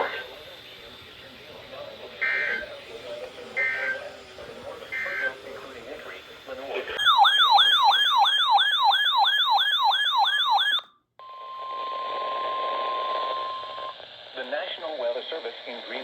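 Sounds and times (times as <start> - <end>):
radio hiss: 0.0 - 7.0, 12.0 - 16.0
electronic siren sweeping down: 2.2 - 2.7, 3.6 - 4.1, 4.9 - 5.4, 7.0 - 13.9
warning alarm tone: 2.2 - 2.7, 3.6 - 4.2, 4.9 - 5.4, 7.0 - 13.9.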